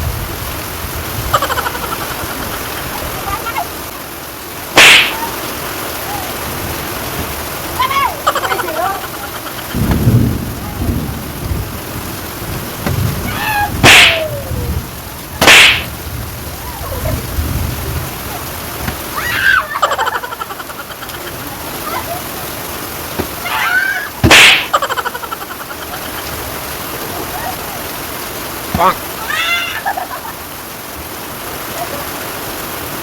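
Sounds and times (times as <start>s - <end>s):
open-hand slaps: 4.8s - 5.2s, 13.8s - 14.2s, 15.4s - 15.9s, 24.2s - 24.7s.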